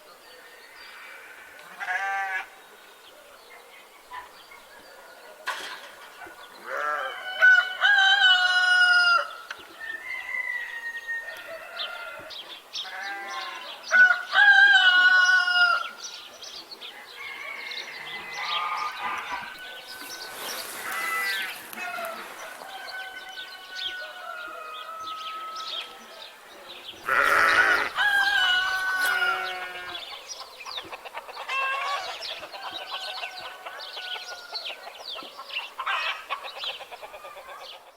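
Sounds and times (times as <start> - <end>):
farmyard birds clucking: 0.1 - 37.9
rooster crowing: 6.8 - 12.3, 13.2 - 16.0, 17.0 - 26.0, 27.1 - 30.1, 31.5 - 34.8.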